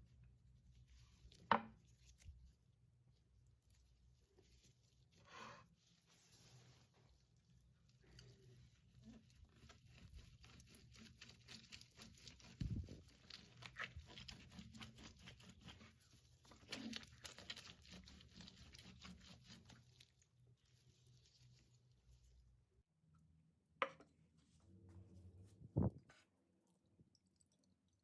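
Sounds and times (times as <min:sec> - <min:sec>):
crunching and scraping of ingredients: 0:00.8 - 0:22.6.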